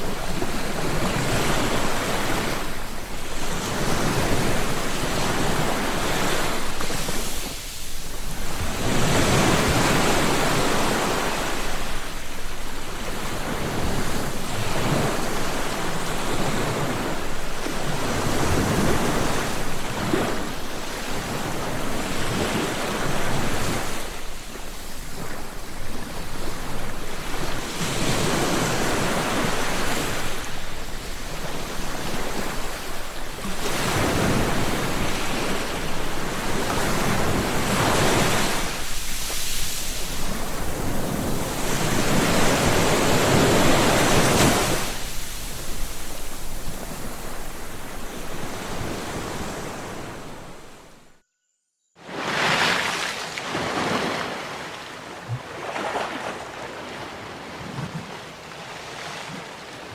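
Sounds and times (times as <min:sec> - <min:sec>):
ocean waves breaking on shore: 0:00.0 - 0:51.1, 0:52.0 - 0:59.9.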